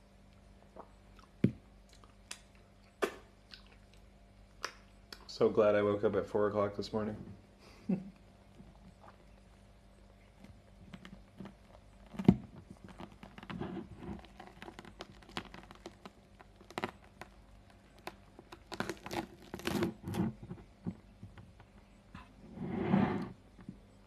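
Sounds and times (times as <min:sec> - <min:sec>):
chewing: 0:00.7 - 0:04.9, 0:08.6 - 0:19.8
pulling at fruit flesh: 0:10.1 - 0:22.6.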